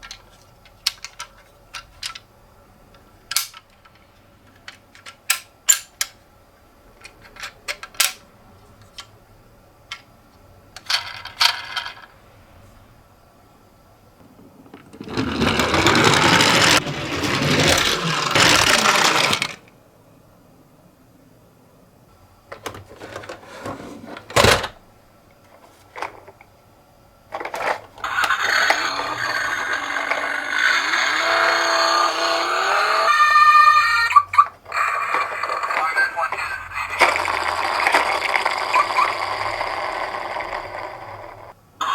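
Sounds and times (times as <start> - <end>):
plastic toy car clicking: 0.0 - 2.3, 3.3 - 3.9, 14.5 - 19.7, 27.3 - 41.9.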